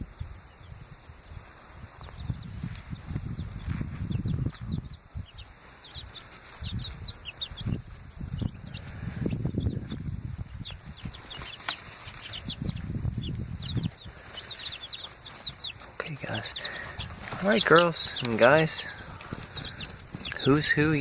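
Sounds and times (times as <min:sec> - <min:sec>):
baby chicks peeping: 0:00.1 - 0:21.0
rustling and bumping in cardboard box: 0:17.0 - 0:21.0.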